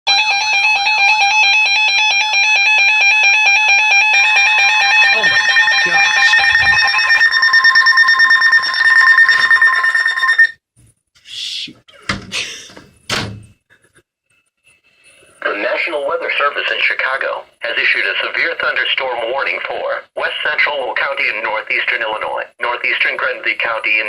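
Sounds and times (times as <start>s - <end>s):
electronic alarm beeping: 0.1s - 10.6s
weather radio attention tone: 4.1s - 10.4s.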